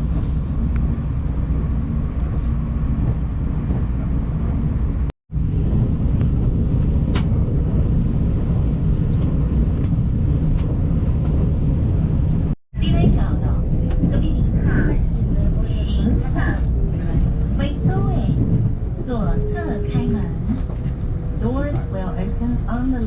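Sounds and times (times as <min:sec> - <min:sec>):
train rumbling at speed: 0:00.0 - 0:23.0.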